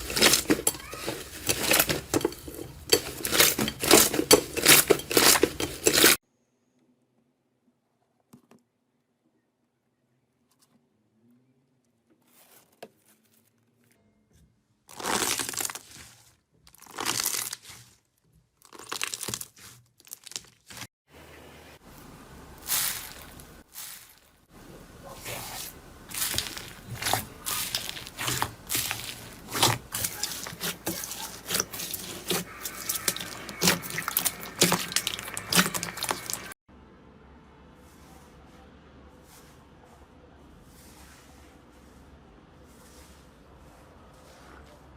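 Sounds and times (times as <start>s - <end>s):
slime crackling and popping: 14.9s - 16.1s, 16.7s - 17.9s, 18.6s - 20.8s.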